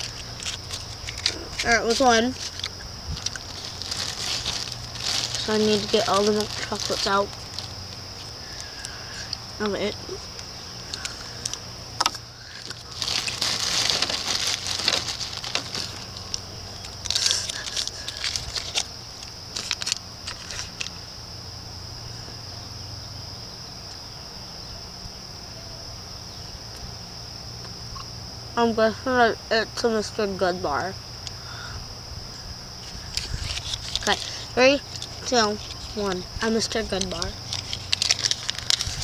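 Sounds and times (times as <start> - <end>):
wrappers crinkling and rustling: 0.0 - 10.0, 10.9 - 20.9, 32.7 - 39.0.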